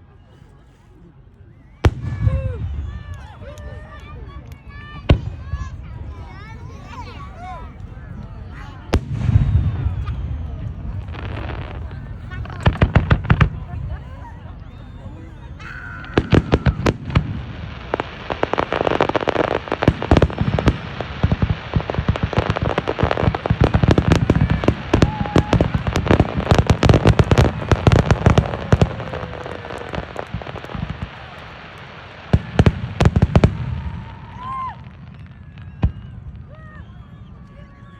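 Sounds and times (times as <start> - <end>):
fireworks popping and banging: 8.9 - 14.0, 16.0 - 37.0.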